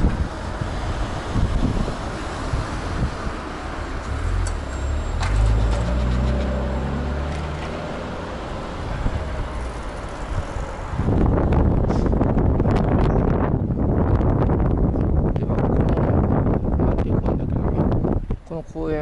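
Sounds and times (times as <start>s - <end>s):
vehicle engine passing: 0.0s - 12.2s
traffic noise: 0.0s - 19.0s
wind noise on microphone: 0.0s - 19.0s.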